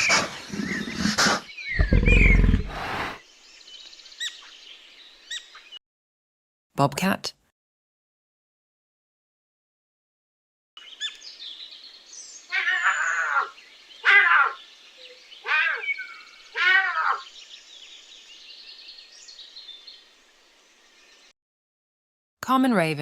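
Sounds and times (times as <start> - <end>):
faint bird chirping: 0.0 - 5.8, 10.8 - 21.3
bobcat calling: 1.8 - 3.1, 12.5 - 14.6, 15.4 - 17.3.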